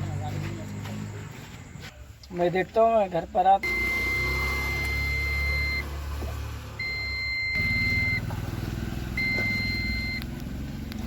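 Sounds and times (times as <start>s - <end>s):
vehicle engine running: 0.0s - 1.6s, 3.6s - 11.0s
high electronic beeps: 3.6s - 5.9s, 6.8s - 8.2s, 9.2s - 10.2s.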